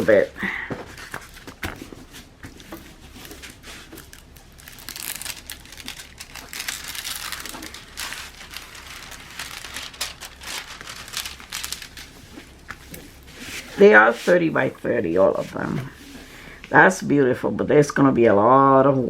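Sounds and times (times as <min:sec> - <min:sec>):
plastic crinkling: 0:02.3 - 0:14.0.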